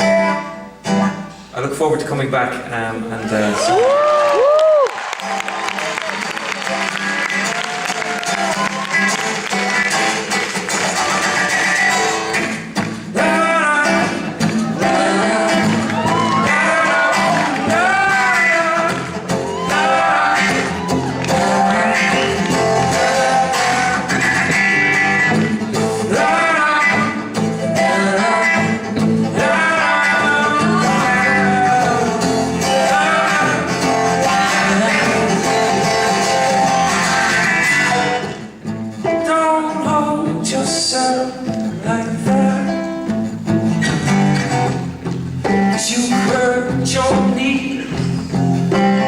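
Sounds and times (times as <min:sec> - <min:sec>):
acoustic guitar: 0:00.0 - 0:49.0
person singing: 0:13.1 - 0:38.4, 0:39.0 - 0:43.1, 0:45.5 - 0:49.0.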